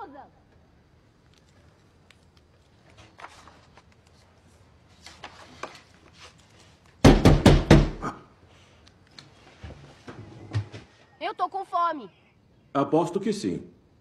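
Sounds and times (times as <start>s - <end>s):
loud thumps: 7.0s - 8.1s.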